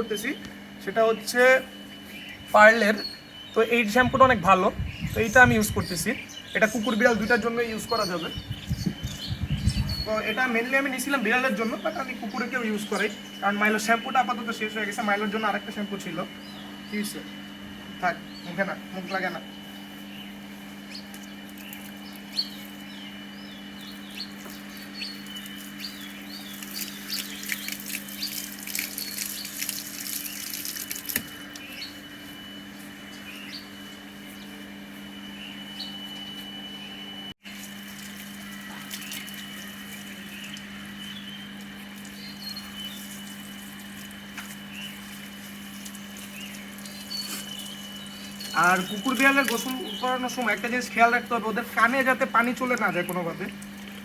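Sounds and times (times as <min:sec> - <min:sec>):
small birds chirping: 0:00.0 - 0:54.0
steady low hum: 0:00.0 - 0:54.0
wet rustle of dog's coat: 0:25.2 - 0:31.2, 0:37.4 - 0:40.4
water splashing: 0:26.5 - 0:31.2.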